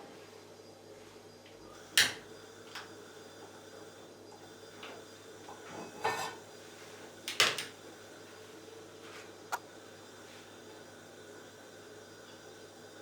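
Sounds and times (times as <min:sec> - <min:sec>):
dish clinking: 0:05.7 - 0:06.4
utensils clattering: 0:05.7 - 0:06.4.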